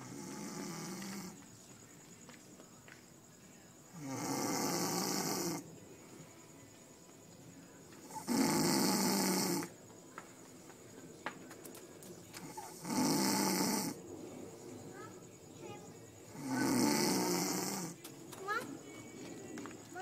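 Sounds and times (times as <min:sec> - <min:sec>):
loud snores: 0:00.0 - 0:01.4, 0:03.9 - 0:05.6, 0:08.0 - 0:09.7, 0:12.4 - 0:14.0, 0:16.3 - 0:18.0
quiet breathing: 0:04.8 - 0:10.1.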